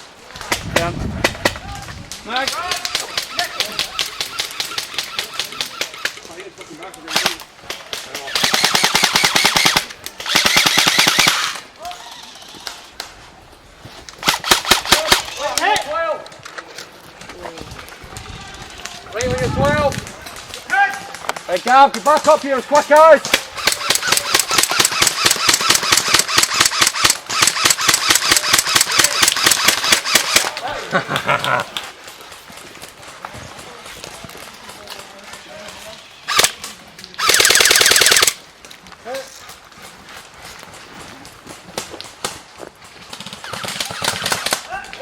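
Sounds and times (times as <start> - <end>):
airsoft machine gun full-auto burst: 8.3 - 11.6, 23.6 - 30.5, 36.3 - 36.5, 37.2 - 38.4, 43.2 - 44.6.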